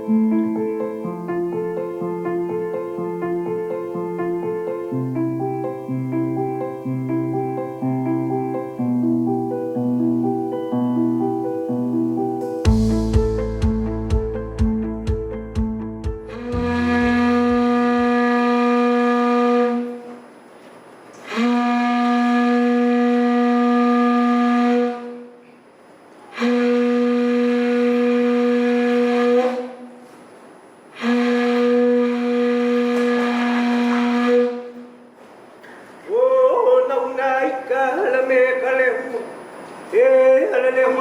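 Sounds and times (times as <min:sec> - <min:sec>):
horn blowing long notes: 0:16.1 - 0:20.2, 0:21.2 - 0:25.4, 0:26.3 - 0:30.0, 0:31.0 - 0:35.0.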